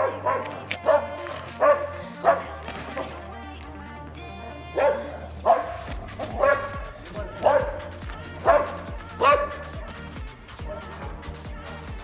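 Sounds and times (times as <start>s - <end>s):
dog barking in sharp yips: 0.0s - 2.5s, 4.8s - 9.7s
background music with low drone: 0.0s - 12.0s.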